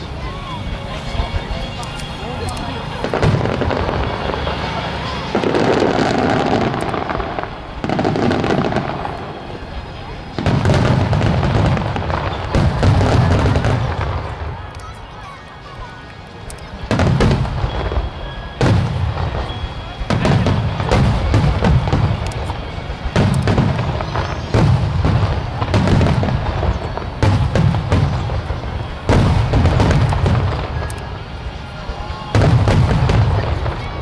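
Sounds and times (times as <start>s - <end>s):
music playing: 0.0s - 14.1s
firework shells bursting: 16.4s - 33.8s.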